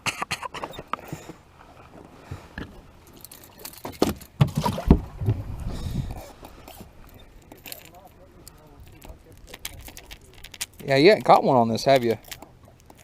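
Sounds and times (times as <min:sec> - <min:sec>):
faint background noise: 0:00.0 - 0:13.0
knocks and deep thumps: 0:04.4 - 0:06.2.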